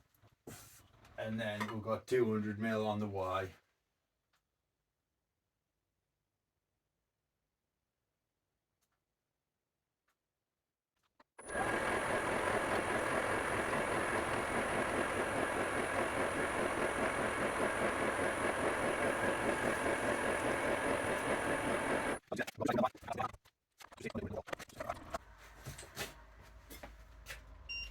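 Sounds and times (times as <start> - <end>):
milling machine feed whining: 11.4 - 22.2.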